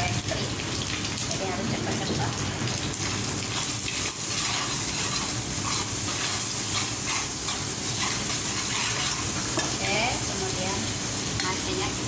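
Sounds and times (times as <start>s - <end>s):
garlic sizzling in hot oil: 0.0s - 12.0s
spatula scraping a pan: 3.5s - 10.2s.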